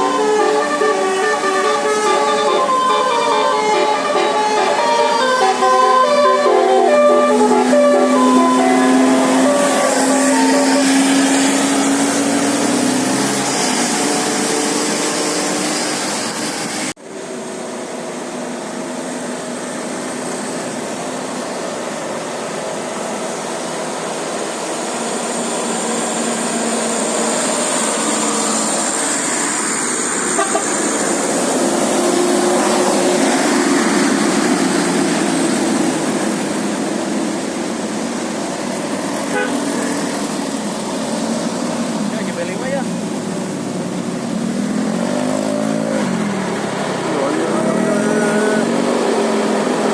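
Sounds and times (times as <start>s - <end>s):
bus horn playing tones: 0.0s - 12.2s, 30.2s - 31.3s, 39.2s - 40.2s
passing vehicles: 0.0s - 49.9s
traffic and engine noise: 0.0s - 49.9s.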